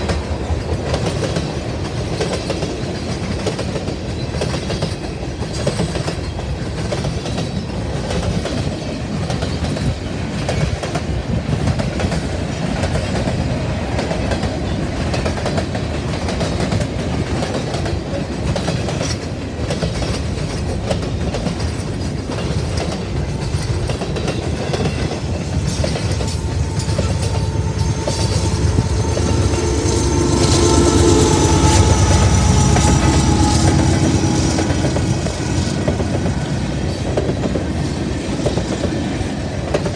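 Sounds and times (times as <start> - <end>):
freight train rolling past: 0.0 - 39.9
steady high tones: 24.8 - 37.4.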